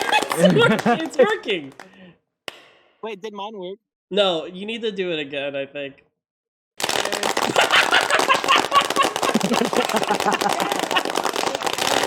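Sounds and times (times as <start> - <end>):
crowd clapping: 0.0 - 2.0, 6.8 - 12.0
whooping voices: 9.3 - 11.8.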